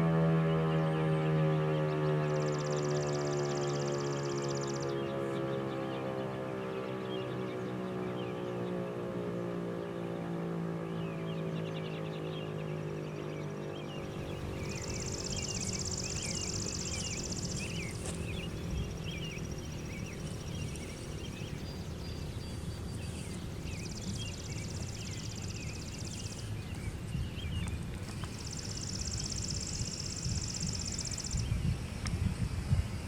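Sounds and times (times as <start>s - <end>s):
bird chirps: 0.5s - 8.8s, 10.9s - 31.7s
songbird trilling: 2.2s - 6.0s, 11.0s - 31.7s
steady low rumble: 11.0s - 33.0s.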